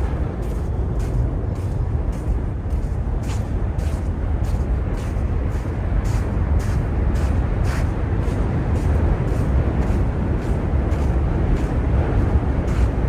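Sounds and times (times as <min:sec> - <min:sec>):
low rumble: 0:00.0 - 0:04.4.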